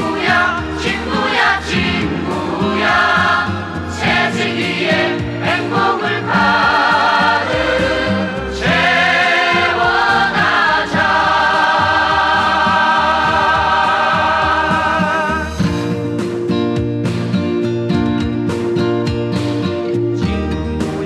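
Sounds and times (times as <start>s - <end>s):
voices singing with vibrato: 0.0s - 15.8s
instrumental backing music: 0.0s - 21.0s.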